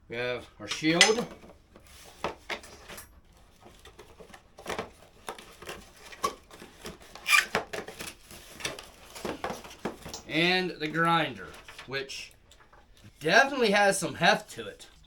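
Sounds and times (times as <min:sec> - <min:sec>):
packaging rustling and knocking: 0:00.7 - 0:10.5.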